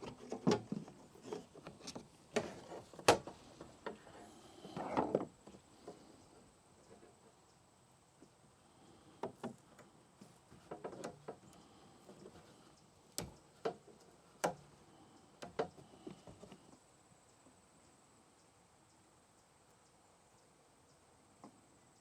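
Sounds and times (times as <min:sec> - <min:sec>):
hardware clicking on plastic hull: 0:10.6 - 0:11.5, 0:13.1 - 0:14.7.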